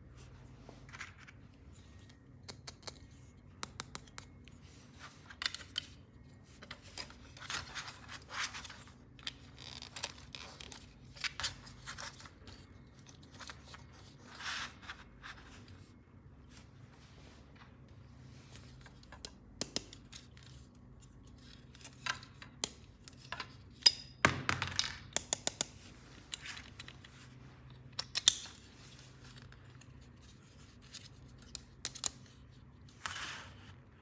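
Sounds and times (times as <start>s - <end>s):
plastic pieces clicking and tapping: 2.4s - 3.0s, 23.8s - 25.8s, 31.3s - 32.3s.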